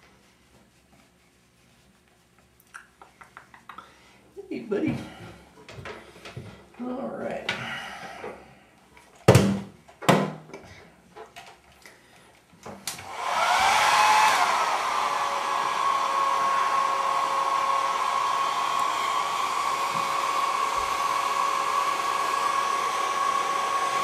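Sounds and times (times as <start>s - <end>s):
hair dryer motor whirring: 12.9s - 24.0s.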